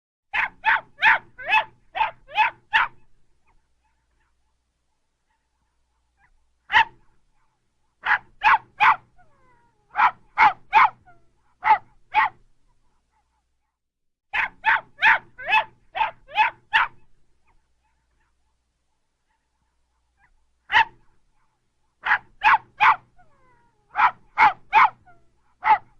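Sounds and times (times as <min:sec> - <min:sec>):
small dog barking: 0:00.3 - 0:04.4, 0:06.2 - 0:07.1, 0:08.0 - 0:12.5, 0:14.3 - 0:18.5, 0:20.2 - 0:21.1, 0:22.0 - 0:25.9.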